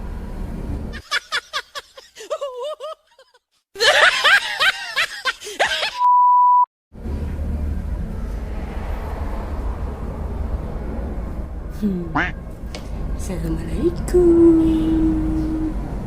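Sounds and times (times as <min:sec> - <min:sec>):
high beep tone: 0:06.0 - 0:06.7
low background rumble: 0:07.0 - 0:16.0.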